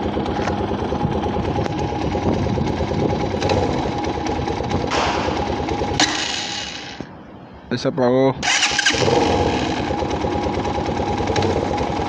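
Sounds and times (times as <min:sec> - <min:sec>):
motorcycle engine ticking clatter: 0:00.0 - 0:07.1, 0:08.4 - 0:12.0.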